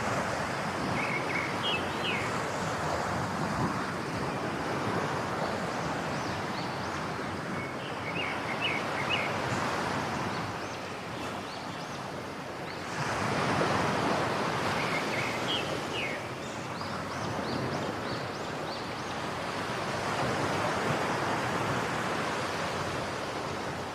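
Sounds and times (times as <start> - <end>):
small birds chirping: 1.0 - 2.4, 14.7 - 19.3.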